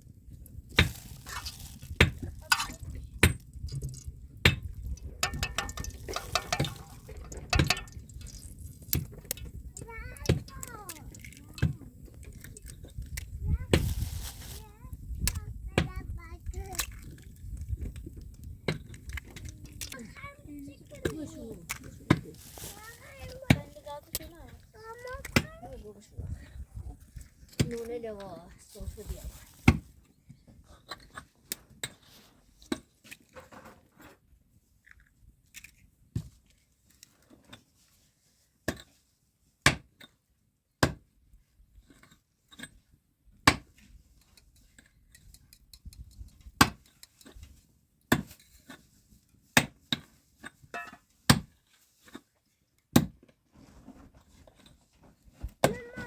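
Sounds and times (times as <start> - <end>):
hard objects knocking and clinking: 1.8 - 13.3, 50.8 - 51.0.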